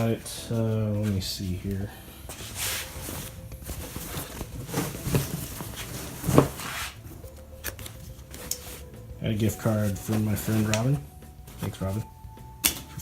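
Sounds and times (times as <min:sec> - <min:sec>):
handling rustling: 0:00.0 - 0:13.0.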